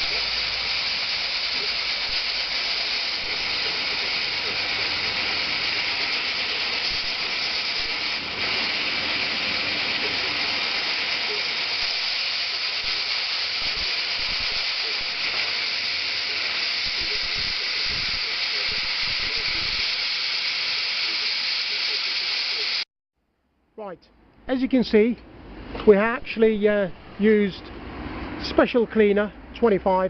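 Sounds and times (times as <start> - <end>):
duct-cleaning machine hissing: 0.0 - 22.9.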